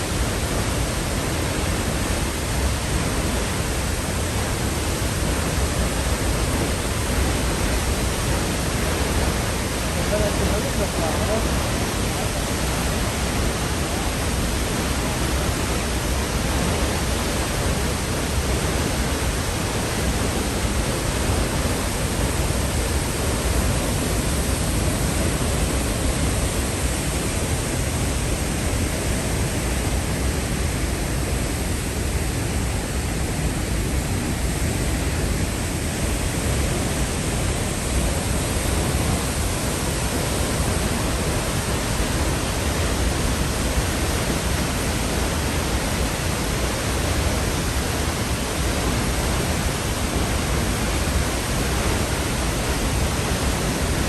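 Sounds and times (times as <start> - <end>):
waterfall roaring: 0.0 - 54.0.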